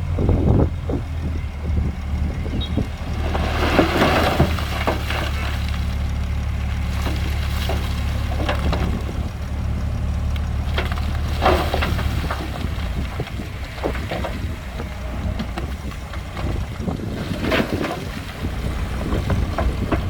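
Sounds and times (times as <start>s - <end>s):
heavy diesel engine running: 0.0s - 20.0s
stones crunching and clattering: 3.1s - 9.3s, 10.7s - 20.0s.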